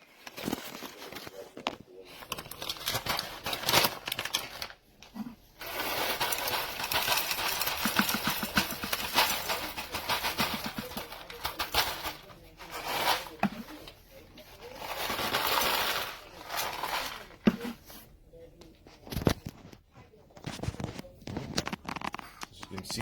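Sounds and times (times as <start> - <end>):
coffee beans rattling into grinder: 5.6 - 12.0.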